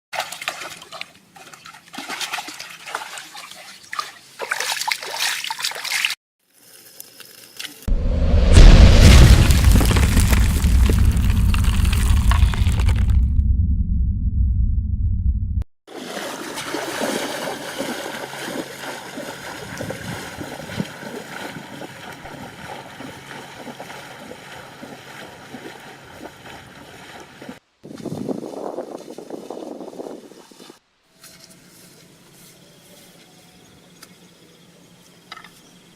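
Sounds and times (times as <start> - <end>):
water splashing and sloshing: 0.1 - 6.2, 15.9 - 28.2
small crackles: 6.5 - 7.9.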